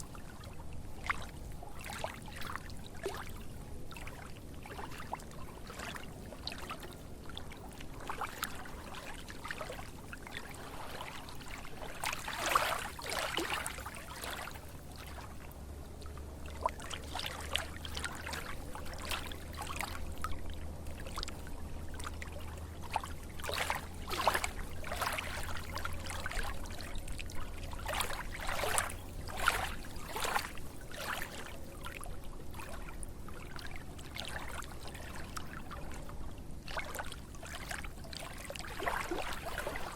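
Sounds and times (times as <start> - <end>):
water trickling and splashing: 0.0 - 39.9.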